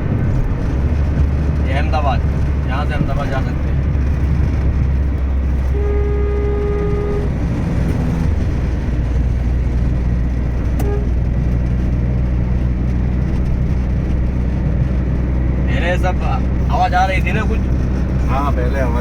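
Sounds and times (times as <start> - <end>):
car driving on highway: 0.0 - 19.0
vehicle horn: 5.5 - 8.4, 10.8 - 11.3.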